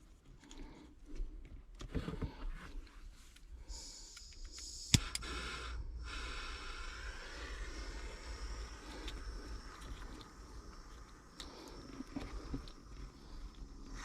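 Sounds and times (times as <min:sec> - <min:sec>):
gas torch hissing: 0:03.6 - 0:14.0
sharp click: 0:04.1 - 0:05.4.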